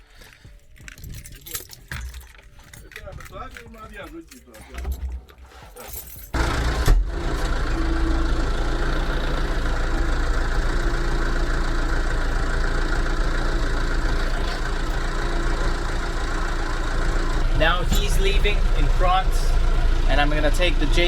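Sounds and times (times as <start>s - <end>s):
diesel engine idling: 6.3s - 21.0s.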